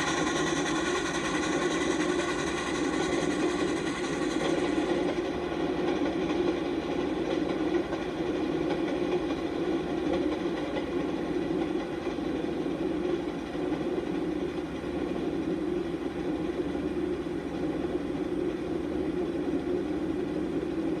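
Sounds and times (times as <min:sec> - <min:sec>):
train wheels rumbling on rail: 0:00.0 - 0:21.0.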